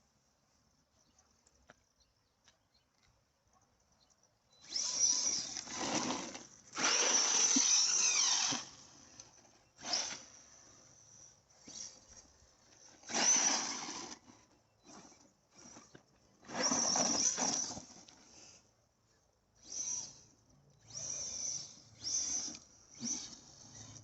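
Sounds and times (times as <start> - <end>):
rc truck motor whirring: 4.6 - 18.7, 19.6 - 24.0.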